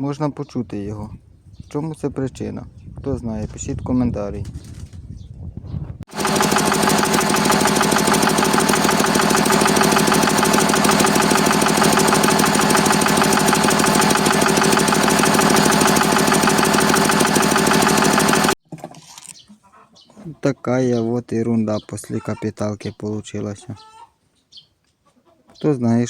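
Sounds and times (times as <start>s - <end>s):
engine running: 6.1s - 18.6s
metallic engine knock: 6.1s - 18.6s.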